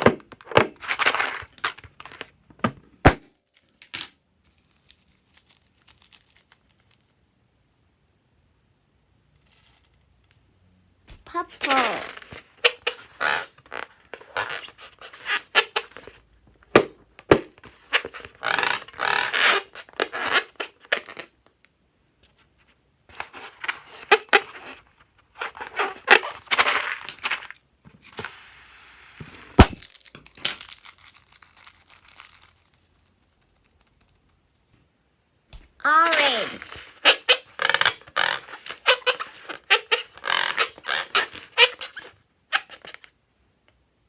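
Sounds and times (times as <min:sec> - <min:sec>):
crinkling and tearing: 0:04.5 - 0:07.2, 0:29.5 - 0:34.8.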